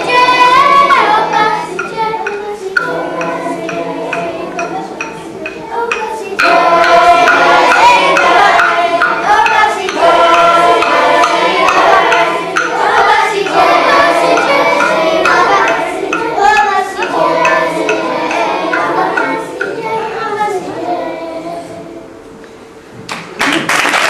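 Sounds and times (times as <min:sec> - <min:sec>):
children's choir singing: 0:00.0 - 0:22.8.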